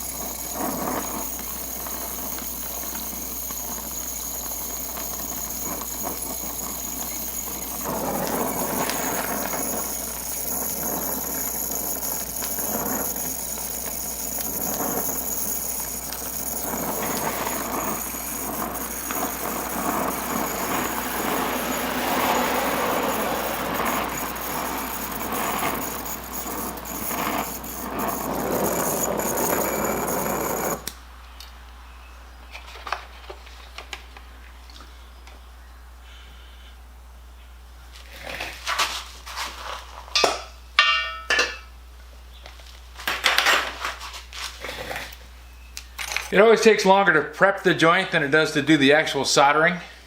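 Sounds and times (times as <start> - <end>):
torch flame hissing: 0.0 - 31.0.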